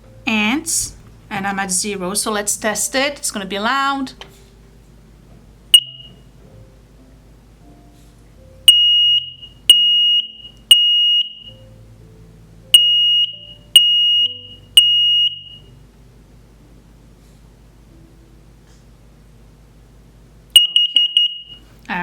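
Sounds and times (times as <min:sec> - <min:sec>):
smoke alarm beeps: 0:05.7 - 0:06.2, 0:08.7 - 0:11.6, 0:12.7 - 0:15.7, 0:20.6 - 0:21.7.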